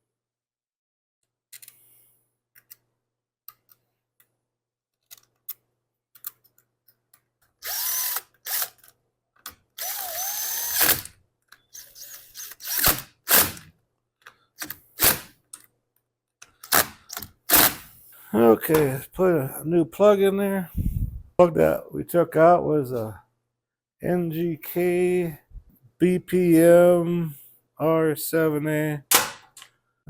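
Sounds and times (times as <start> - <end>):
cordless drill running: 7.6 - 8.8, 9.8 - 11.1, 11.8 - 13.5.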